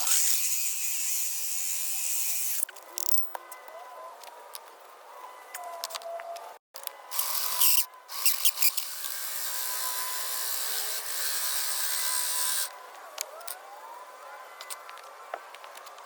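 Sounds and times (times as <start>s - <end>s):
power drill boring into masonry: 0.0s - 2.7s, 7.1s - 12.7s.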